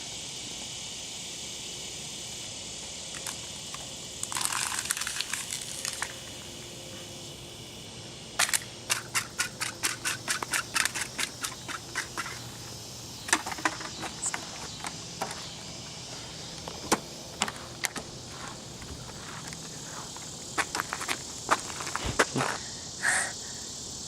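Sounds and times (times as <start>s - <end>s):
sharp clicks and crackles: 3.1s - 6.3s, 8.4s - 12.4s.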